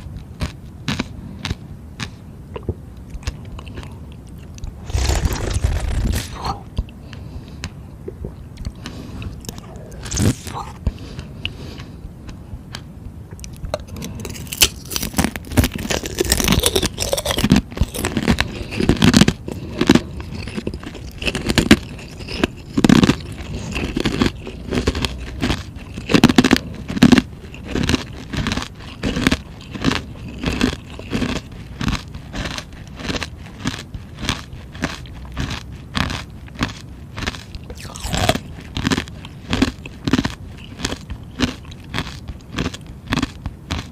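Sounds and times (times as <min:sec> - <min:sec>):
crunching ice: 0:13.9 - 0:43.9.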